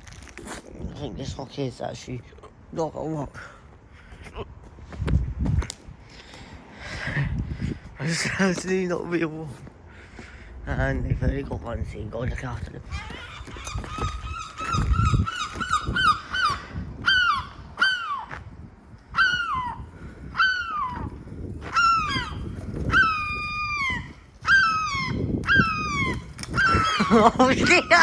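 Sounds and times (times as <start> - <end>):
gulls calling: 12.8 - 18.5, 19.1 - 28.0.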